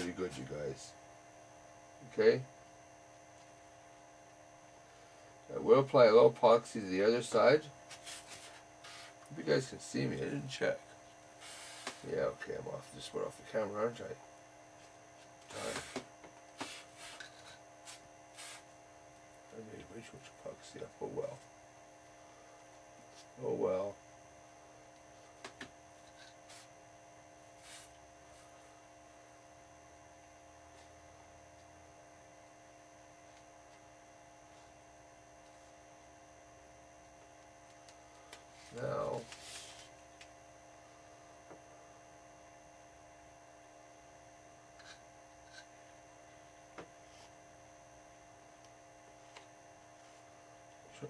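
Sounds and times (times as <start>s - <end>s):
mains hum: 0.0s - 51.0s.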